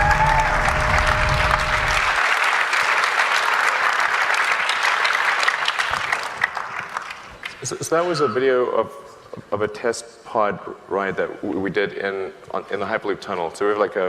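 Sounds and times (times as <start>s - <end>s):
audience applauding: 0.0s - 7.8s.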